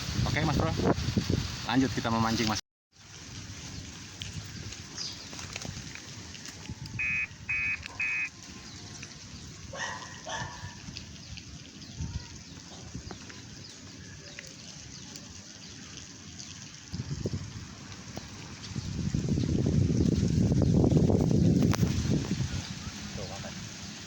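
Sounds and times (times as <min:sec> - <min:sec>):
animal calling high-pitched notes: 0:07.0 - 0:08.3.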